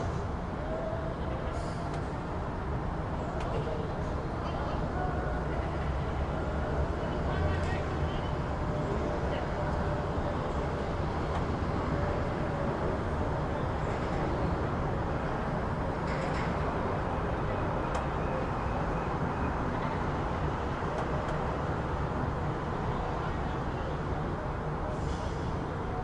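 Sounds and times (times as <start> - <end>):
road traffic rumble: 0.0 - 26.0.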